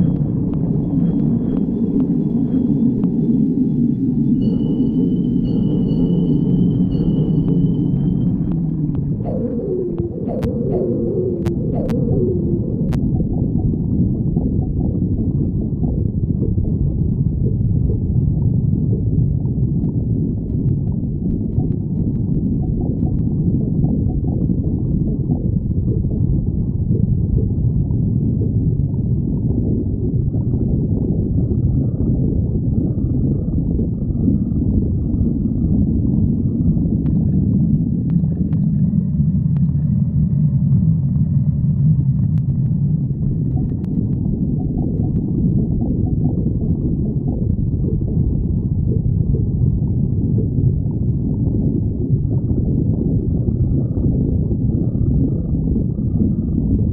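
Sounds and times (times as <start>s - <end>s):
faint higher tone: 4.3s - 13.8s
stomach growling: 6.9s - 56.9s.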